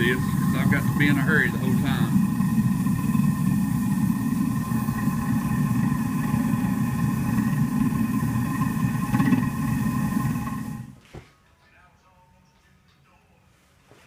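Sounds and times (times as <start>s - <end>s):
propane burner rumbling rush: 0.0s - 11.0s.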